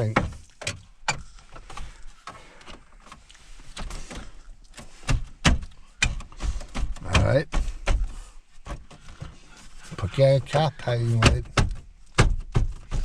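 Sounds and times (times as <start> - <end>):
plastic trim panel clicks and knocks: 5.0 - 9.3, 10.5 - 13.0.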